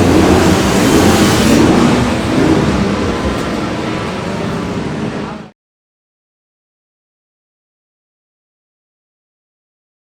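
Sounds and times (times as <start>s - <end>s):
racing motorcycle engine running: 0.0s - 5.3s.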